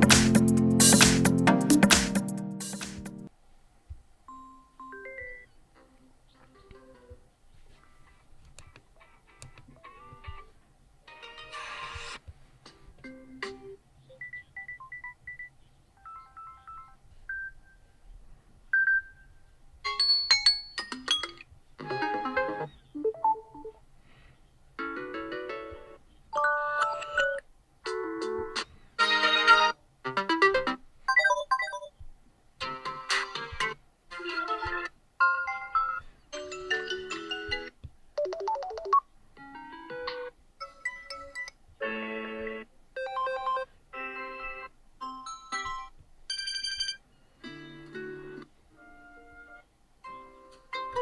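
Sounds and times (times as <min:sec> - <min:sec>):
electronic ringtone melodies: 0:00.0 - 0:03.3, 0:38.2 - 0:39.0, 0:45.1 - 0:47.0.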